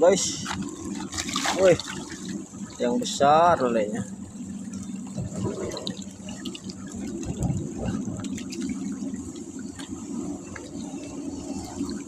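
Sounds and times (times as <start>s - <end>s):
fish splashing in water: 0.4s - 2.8s, 4.4s - 12.0s
low hum: 0.4s - 12.0s.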